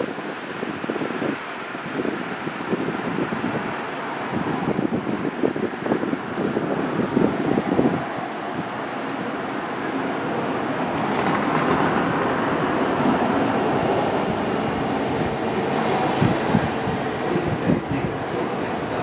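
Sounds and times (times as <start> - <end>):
train rumbling on rails: 0.0 - 19.0
short high squeak: 9.5 - 9.9.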